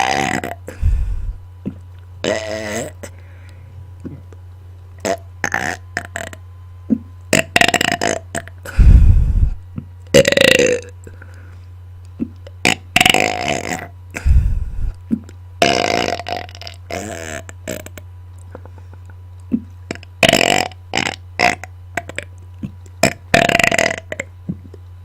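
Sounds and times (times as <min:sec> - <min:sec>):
person burping: 0:00.0 - 0:00.9, 0:01.7 - 0:03.1, 0:05.0 - 0:09.0, 0:10.1 - 0:11.0, 0:12.2 - 0:14.4, 0:15.1 - 0:18.0, 0:19.5 - 0:24.8
steady low hum: 0:00.0 - 0:25.0.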